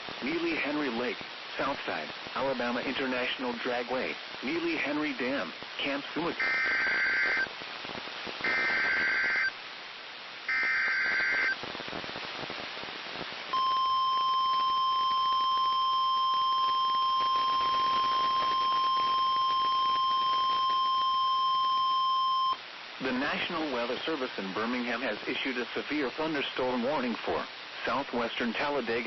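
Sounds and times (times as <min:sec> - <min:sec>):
warbling digital data tones: 0:06.4 - 0:07.5, 0:08.4 - 0:09.5, 0:10.5 - 0:11.6, 0:16.6 - 0:21.8.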